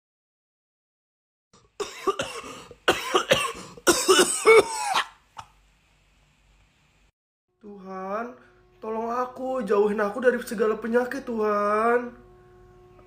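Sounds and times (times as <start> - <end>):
man coughing: 1.6 - 5.5.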